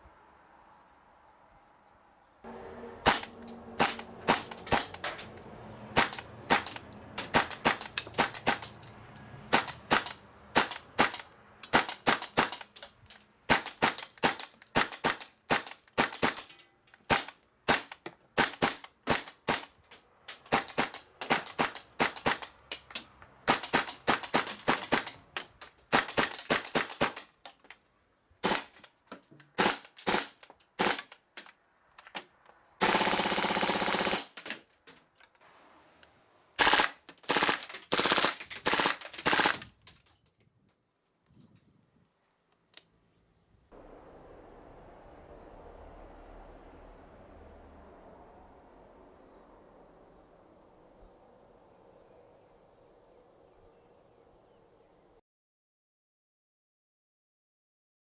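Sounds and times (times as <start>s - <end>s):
airsoft gun shots: 3.0s - 5.1s, 6.0s - 8.8s, 9.5s - 12.8s, 13.5s - 19.7s, 36.6s - 39.7s.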